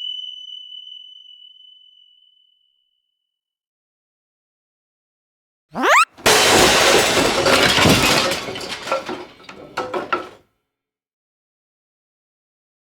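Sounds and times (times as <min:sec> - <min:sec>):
rising cartoon whistle: 0:05.8 - 0:06.1
glass crashing and debris clattering: 0:05.8 - 0:10.3.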